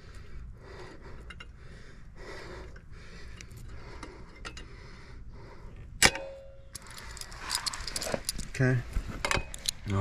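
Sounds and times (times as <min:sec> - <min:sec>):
sharp metallic clink: 0:06.0 - 0:06.9.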